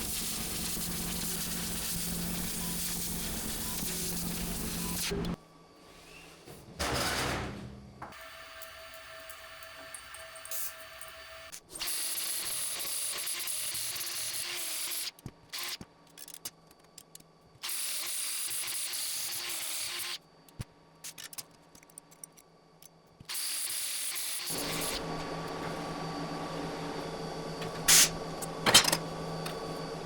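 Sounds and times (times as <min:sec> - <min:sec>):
laser cutter hissing: 0:00.0 - 0:05.4.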